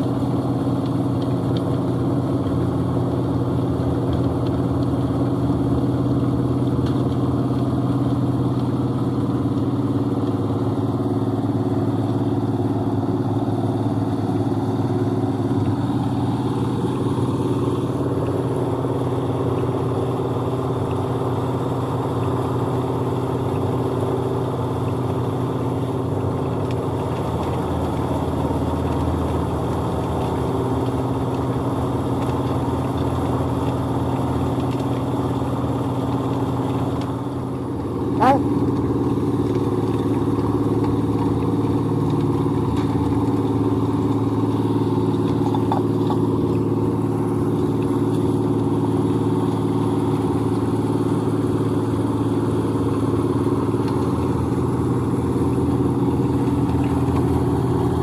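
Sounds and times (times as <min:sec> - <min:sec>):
concrete mixer engine running: 0:00.0 - 0:58.0.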